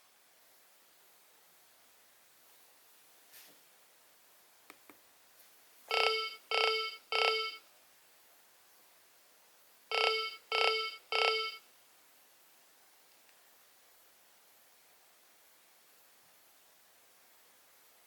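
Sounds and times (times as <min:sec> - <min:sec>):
phone ringtone short beeps: 0:05.9 - 0:07.6, 0:09.9 - 0:11.6.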